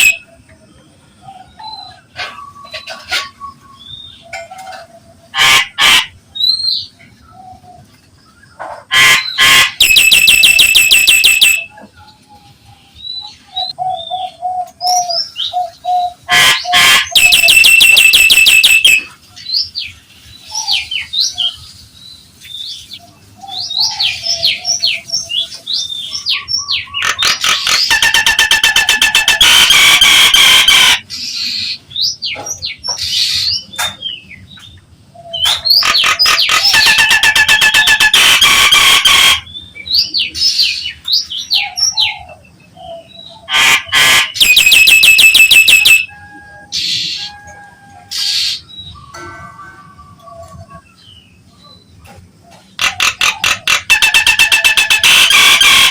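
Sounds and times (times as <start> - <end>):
bird whistles and clicks: 0.0 - 0.2, 9.8 - 12.0, 16.4 - 19.2, 26.7 - 31.0, 35.3 - 39.4, 43.5 - 46.1, 52.5 - 55.9
harsh pulsed rattling calls: 0.0 - 0.2, 5.3 - 6.2, 8.9 - 11.7, 16.2 - 19.1, 26.9 - 31.6, 35.4 - 39.5, 43.5 - 46.1, 52.7 - 55.9.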